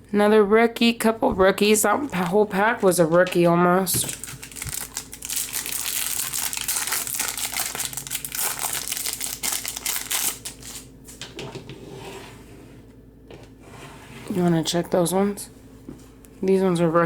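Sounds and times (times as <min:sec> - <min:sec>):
foil wrapper crinkling: 0:02.9 - 0:11.2.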